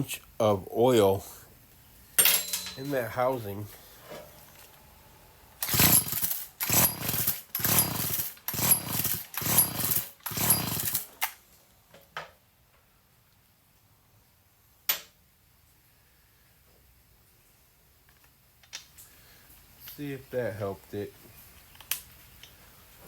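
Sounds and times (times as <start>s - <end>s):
starter cord pulls whirring engine: 5.6s - 11.0s.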